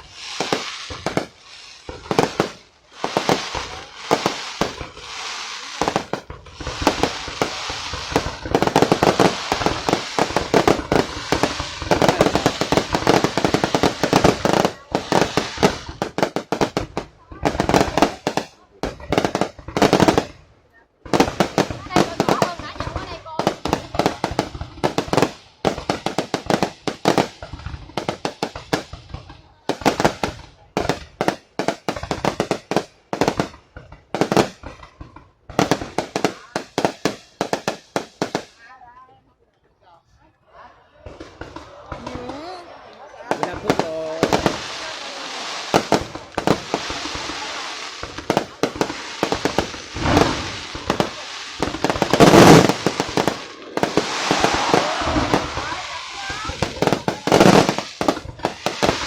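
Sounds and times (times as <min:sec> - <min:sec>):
fireworks bangs and crackles: 0:00.0 - 0:39.1, 0:40.9 - 0:59.0.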